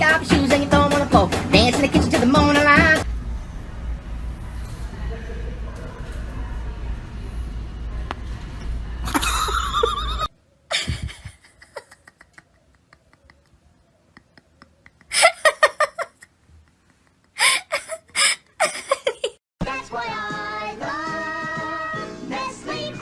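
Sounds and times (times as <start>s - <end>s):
person laughing: 9.1s - 19.4s.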